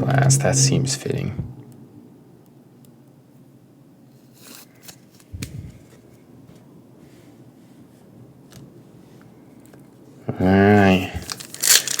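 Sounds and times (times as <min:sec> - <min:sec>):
trading cards rustling: 0:10.7 - 0:12.0.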